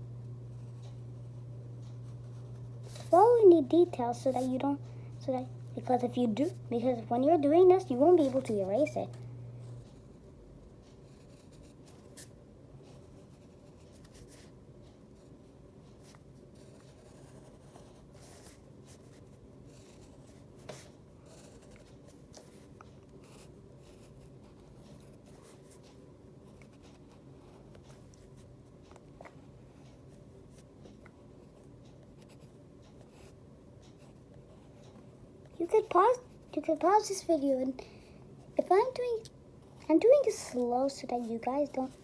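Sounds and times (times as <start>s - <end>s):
low steady hum: 0.0s - 42.0s
pen scratching on paper: 11.0s - 12.3s, 16.0s - 28.5s, 31.4s - 34.8s.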